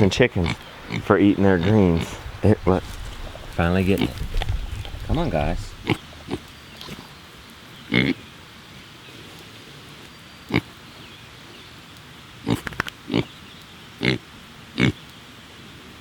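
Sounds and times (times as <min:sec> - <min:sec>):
pigs grunting: 0:00.0 - 0:07.2, 0:07.9 - 0:08.3, 0:10.5 - 0:10.7, 0:12.4 - 0:13.3, 0:14.0 - 0:15.0.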